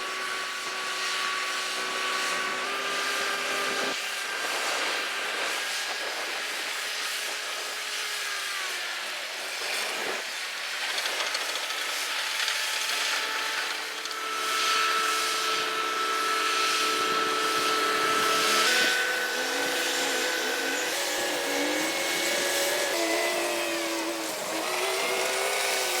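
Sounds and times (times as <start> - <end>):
bulldozer engine running: 10.8 - 26.0.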